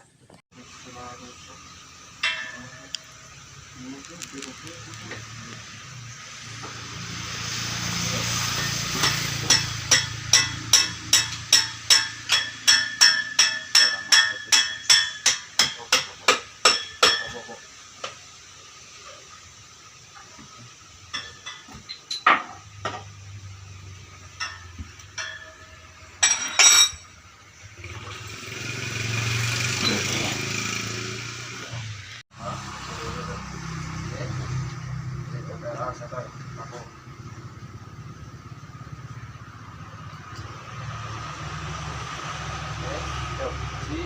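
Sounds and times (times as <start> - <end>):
clattering strike: 2.2 - 3.1
hammer beating on metal: 2.2 - 3.4, 8.5 - 17.6, 24.3 - 27.0.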